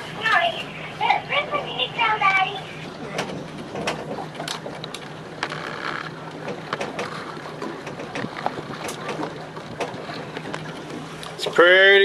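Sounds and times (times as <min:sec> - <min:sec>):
boat motor hum: 0:00.0 - 0:12.0
knocks and rattles: 0:03.1 - 0:11.0.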